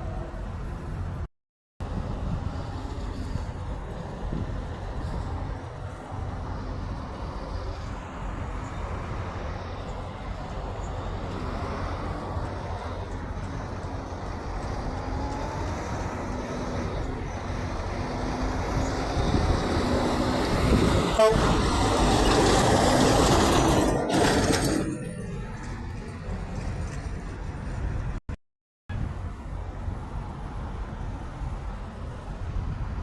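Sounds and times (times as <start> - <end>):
traffic rumble: 0.0 - 28.3
approaching vehicle engine hum: 2.0 - 28.2.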